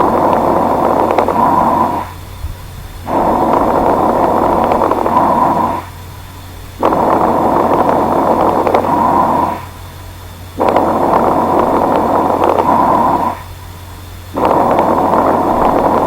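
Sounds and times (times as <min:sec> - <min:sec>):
breath noise: 0:03.0 - 0:05.9, 0:10.6 - 0:13.5.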